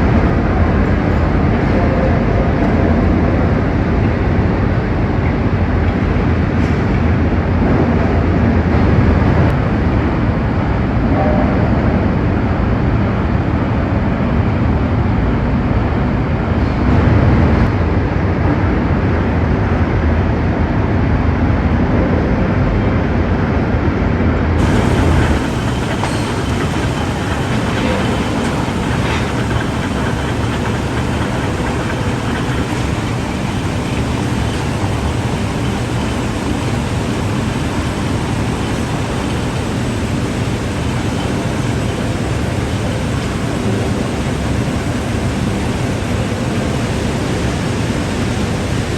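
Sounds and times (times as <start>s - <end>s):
heavy machinery rumble: 0.0s - 48.9s
thin hissy steady noise: 24.6s - 48.9s.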